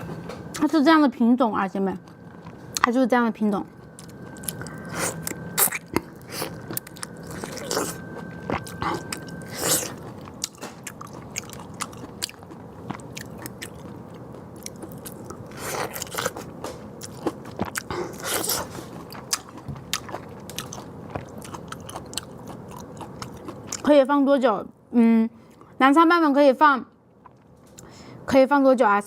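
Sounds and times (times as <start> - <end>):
person biting and chewing: 3.8 - 23.8.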